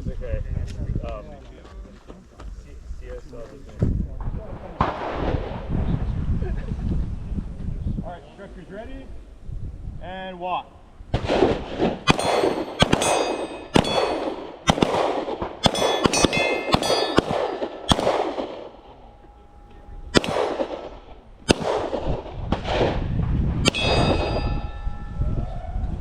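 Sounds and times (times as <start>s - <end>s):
metallic ringing of steel targets: 12.1s - 15.0s, 15.6s - 22.0s, 23.6s - 25.7s
handgun shots: 12.1s - 18.7s, 20.1s - 22.6s, 23.6s - 24.6s.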